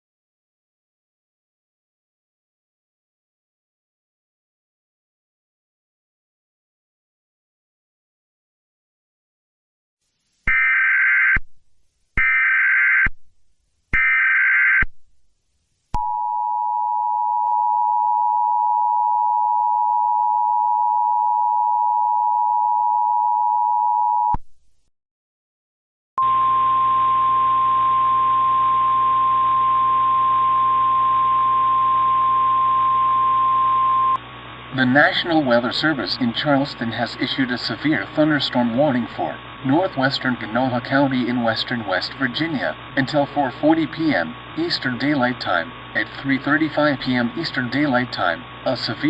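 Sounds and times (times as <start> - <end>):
steady warning alarm tone: 10.5 - 11.4, 12.2 - 13.1, 14.0 - 14.9, 26.2 - 34.2.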